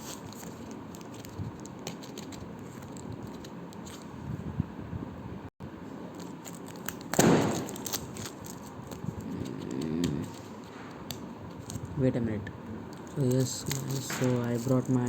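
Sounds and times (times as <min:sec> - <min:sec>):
packaging rustling and crinkling: 0:00.0 - 0:04.1, 0:06.1 - 0:10.7, 0:11.5 - 0:12.0, 0:13.0 - 0:15.0.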